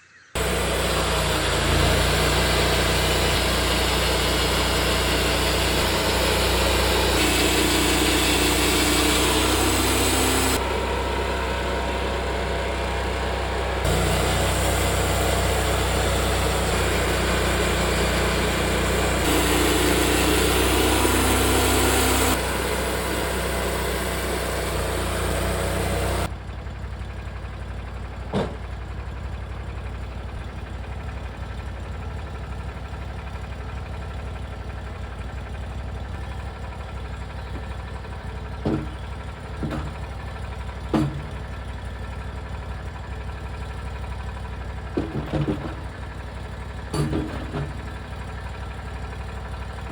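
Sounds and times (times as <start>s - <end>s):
saw blade cutting log: 0.4s - 11.0s, 13.8s - 26.3s
sawmill engine running: 0.4s - 49.9s.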